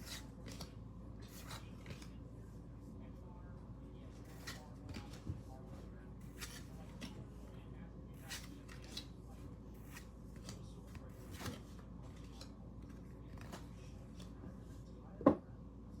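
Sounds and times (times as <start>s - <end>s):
cards rustling and clicking: 0.1s - 2.2s, 6.3s - 7.2s, 8.2s - 9.1s, 9.8s - 14.3s.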